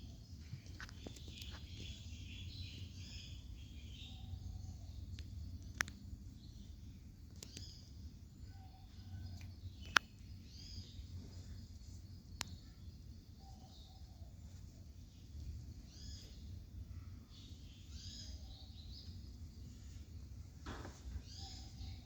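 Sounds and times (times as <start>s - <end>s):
birds chirping: 0.0s - 22.0s
sharp clicks: 5.1s - 6.0s, 7.3s - 7.7s, 9.4s - 10.1s.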